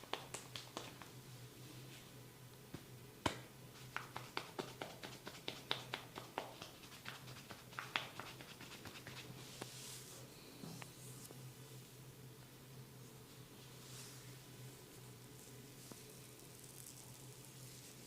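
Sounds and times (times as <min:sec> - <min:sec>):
hands clicking and tapping on head: 0:00.0 - 0:01.1, 0:02.7 - 0:09.3.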